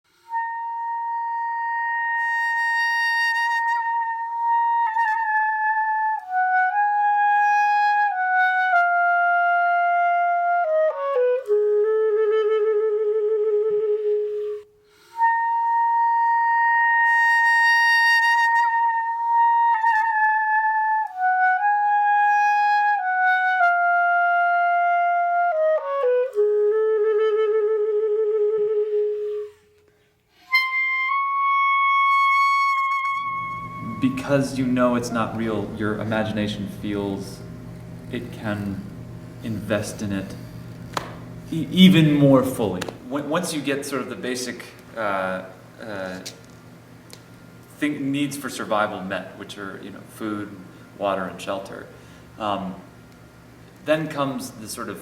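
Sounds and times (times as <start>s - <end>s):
solo instrumental melody: 0.1s - 43.2s.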